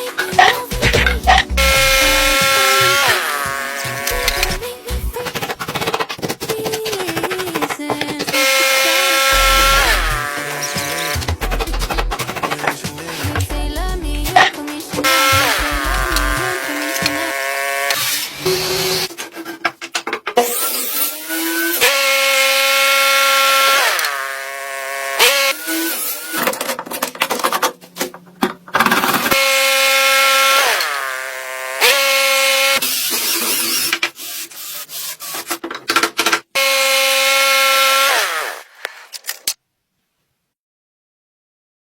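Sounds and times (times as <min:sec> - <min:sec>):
scraping and rubbing with knocks: 0:00.2 - 0:08.4, 0:10.8 - 0:13.5, 0:32.8 - 0:36.4
power tool motor running: 0:00.3 - 0:05.1, 0:08.3 - 0:12.4, 0:20.6 - 0:26.5, 0:29.4 - 0:33.9, 0:36.6 - 0:38.6.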